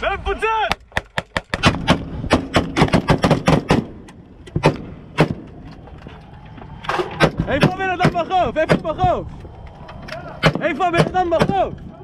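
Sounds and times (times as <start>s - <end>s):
rapid gunfire: 1.3s - 3.9s.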